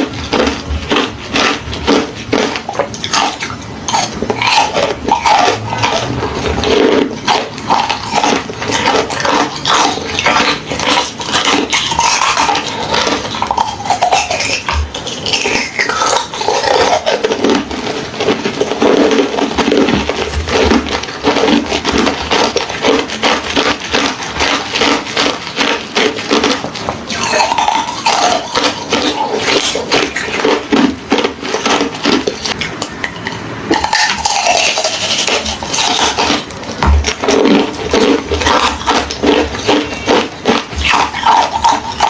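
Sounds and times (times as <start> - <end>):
person crunching ice: 0.0 - 32.6, 33.7 - 42.0.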